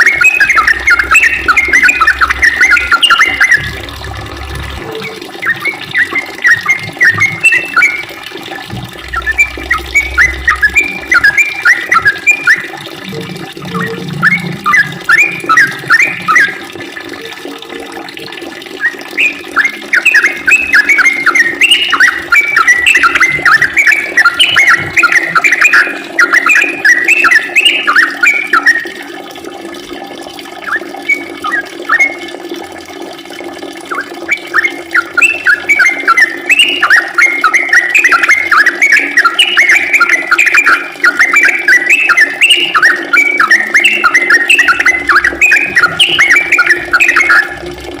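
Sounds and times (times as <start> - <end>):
bird singing bubbly phrases: 0.0 - 48.0
low hum: 0.5 - 6.0, 6.6 - 15.8.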